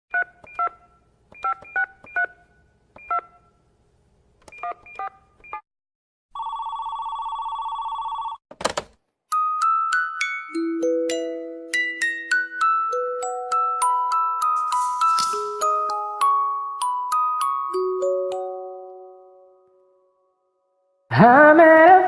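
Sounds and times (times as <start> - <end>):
telephone ringing tone: 6.3 - 8.4.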